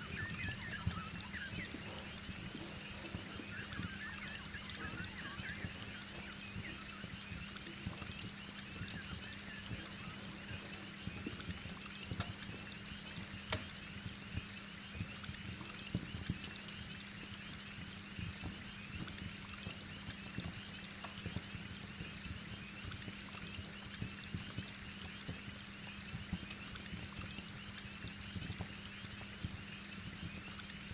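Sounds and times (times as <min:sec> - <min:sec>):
heavy rain pouring: 0:00.0 - 0:13.4
wood fire crackling: 0:00.0 - 0:21.8.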